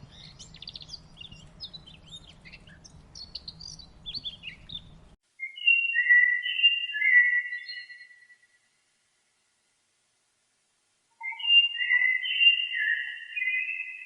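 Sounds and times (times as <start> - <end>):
low background hum: 0.0 - 5.2
songbirds chirping: 0.0 - 8.6, 11.1 - 14.0.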